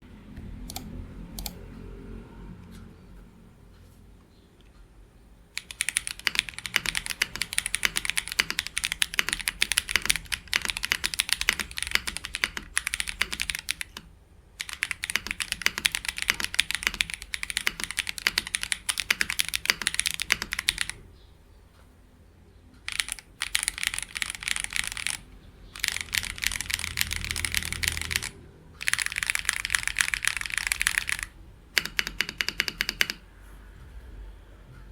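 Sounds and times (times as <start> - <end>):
mechanical keyboard typing: 0.6 - 1.6, 5.6 - 21.0, 22.8 - 33.2.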